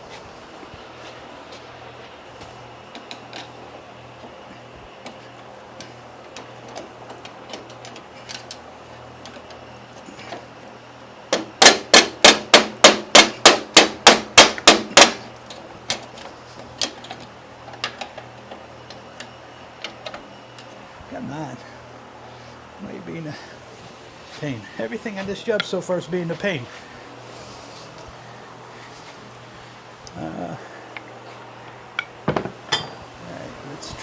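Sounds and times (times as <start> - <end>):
tools tapping and clicking: 25.5 - 25.8, 32.0 - 33.0.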